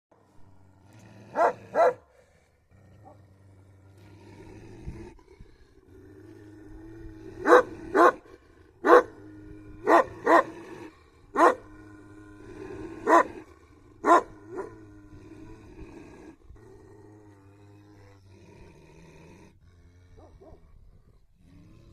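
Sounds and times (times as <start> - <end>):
dog growling: 0.2 - 21.9
dog barking: 1.4 - 2.1, 7.4 - 8.2, 8.8 - 9.1, 9.9 - 10.6, 11.4 - 11.7, 13.0 - 13.4, 14.0 - 14.7.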